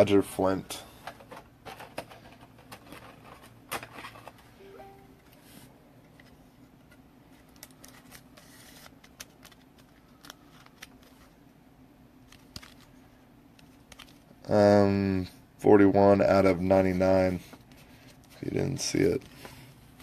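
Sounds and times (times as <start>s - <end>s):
low steady hum: 0.0s - 20.0s
cards clicking and rustling: 1.0s - 4.5s, 6.8s - 11.4s, 12.2s - 13.0s, 13.6s - 14.3s.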